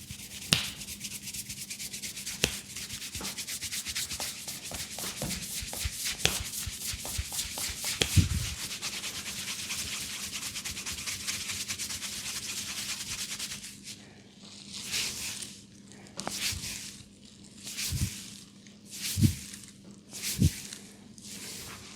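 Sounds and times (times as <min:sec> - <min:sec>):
hands rubbing hair and scalp: 0:00.0 - 0:14.0, 0:17.7 - 0:18.2, 0:19.0 - 0:19.5, 0:20.2 - 0:21.9.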